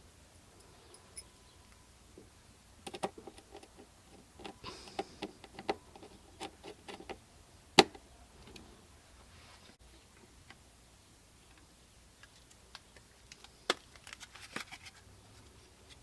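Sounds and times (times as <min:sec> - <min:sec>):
computer parts clicking and rattling: 0:02.9 - 0:07.2
packaging being handled: 0:12.4 - 0:16.0.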